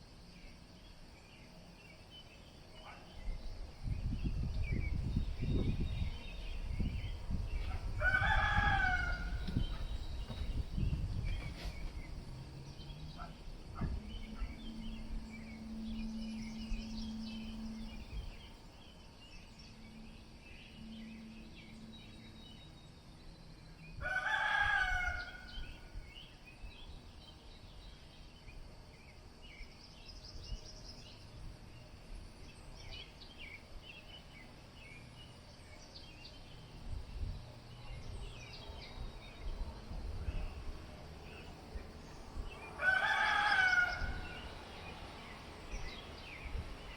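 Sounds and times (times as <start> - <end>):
rooster crowing: 7.7 - 10.0, 24.0 - 25.8, 42.6 - 44.5.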